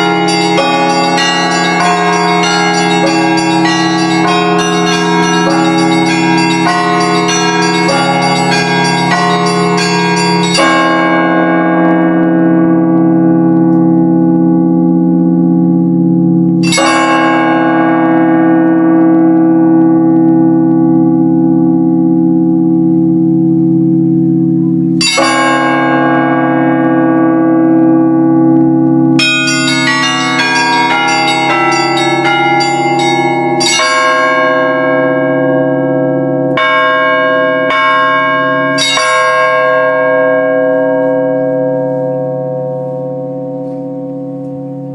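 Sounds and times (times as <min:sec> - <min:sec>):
small bells ringing rapidly: 0:00.0 - 0:11.3, 0:29.2 - 0:34.5
deep bell strokes: 0:00.0 - 0:44.9.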